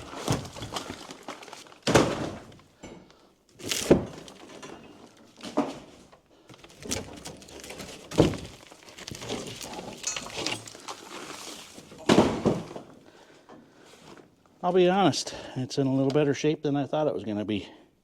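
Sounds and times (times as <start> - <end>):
demolition thuds and cracking: 0.0 - 2.9, 3.5 - 13.0.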